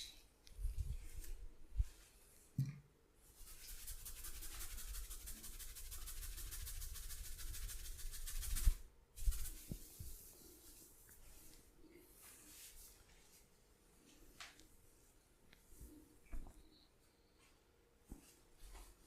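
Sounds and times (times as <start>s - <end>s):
hands rubbing briskly: 3.4s - 10.3s.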